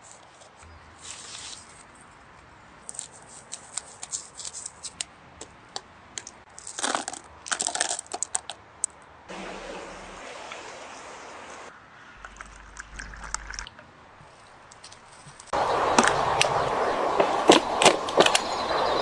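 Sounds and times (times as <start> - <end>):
materials crinkling: 6.5 - 9.0
water pouring: 12.2 - 13.8.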